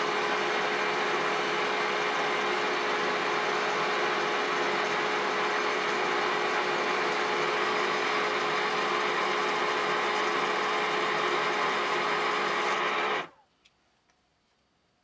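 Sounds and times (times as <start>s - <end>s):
machine tool whirring: 5.4s - 13.3s
faint clicks: 13.3s - 15.0s.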